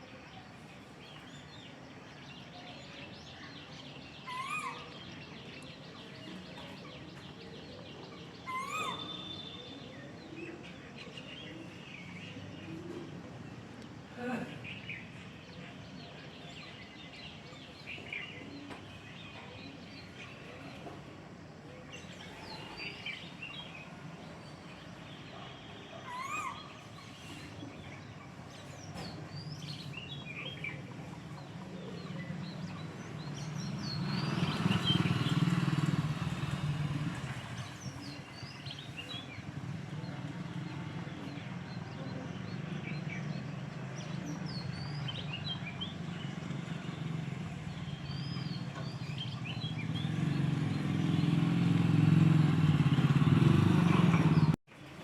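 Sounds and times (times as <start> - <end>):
birds chirping and calling: 3.6 - 13.9, 21.9 - 54.6
vehicle passing: 32.0 - 54.6.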